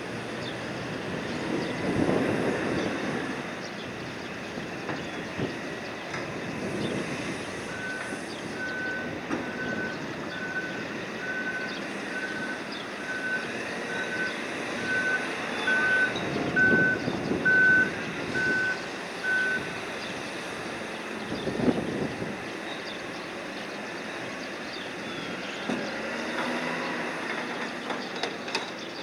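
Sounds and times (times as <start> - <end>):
backup warning alarm beeping: 7.7 - 19.7.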